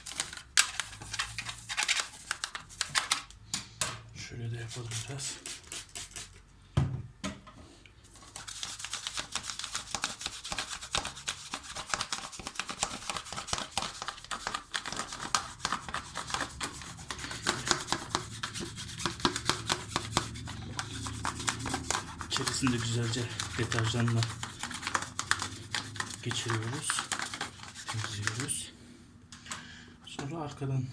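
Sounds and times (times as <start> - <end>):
rapid scrubbing: 8.5 - 28.6.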